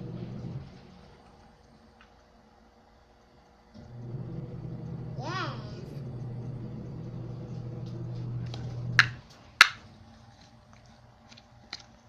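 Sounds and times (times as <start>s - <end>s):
low hum: 0.0s - 1.5s, 3.8s - 9.3s.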